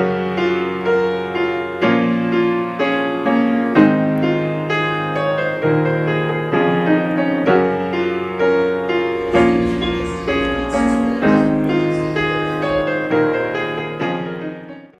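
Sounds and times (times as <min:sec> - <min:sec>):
slow music with sustained chords: 0:09.1 - 0:13.5.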